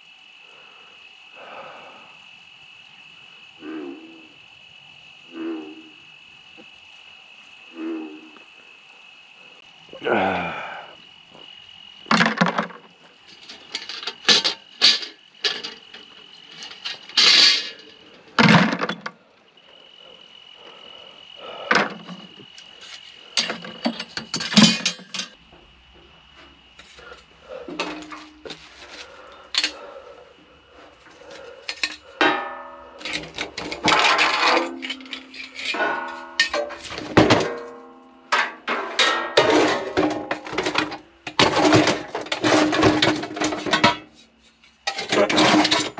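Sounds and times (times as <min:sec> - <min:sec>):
scrap metal clanking: 0:13.3 - 0:19.1, 0:21.7 - 0:25.4, 0:26.8 - 0:29.8, 0:31.1 - 0:45.9.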